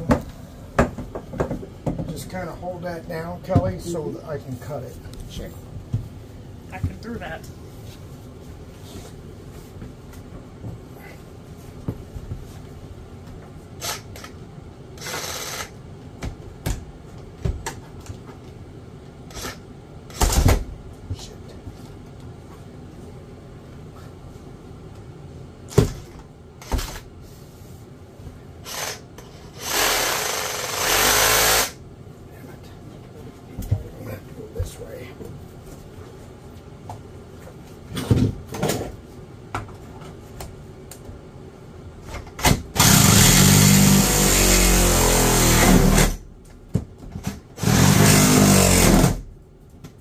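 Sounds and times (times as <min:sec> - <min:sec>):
knocks and clatter of handling: 0:00.0 - 0:02.3
reciprocating saw cutting: 0:28.7 - 0:31.8, 0:42.8 - 0:46.2, 0:47.6 - 0:49.2.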